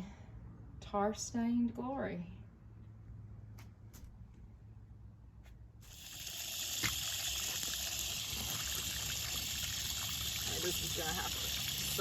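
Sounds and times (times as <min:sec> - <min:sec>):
running water rushing: 0:05.9 - 0:12.0.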